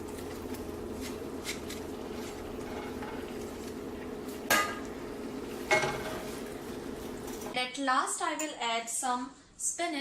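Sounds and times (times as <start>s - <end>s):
utensil scraping in pan: 0.0s - 7.6s
utensil clanking against pan: 4.5s - 4.9s, 5.7s - 6.3s.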